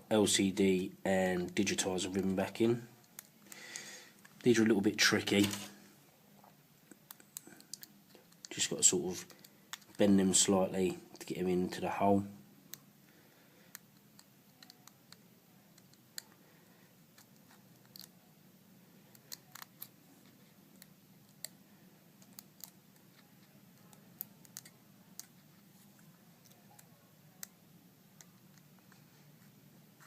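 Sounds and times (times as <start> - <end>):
low room hum: 0.0 - 30.0.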